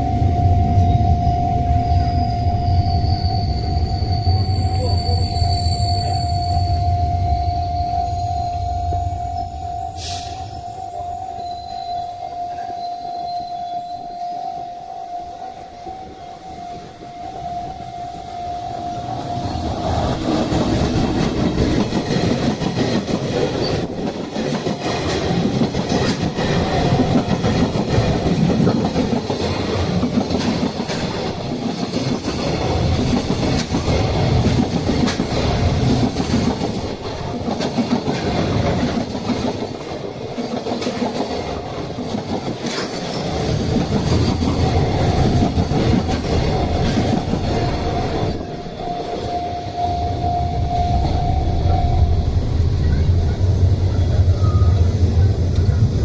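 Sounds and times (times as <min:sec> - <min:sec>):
level-crossing warning bell: 0:00.0 - 0:55.7
wheels clattering over rail joints: 0:19.2 - 0:49.4.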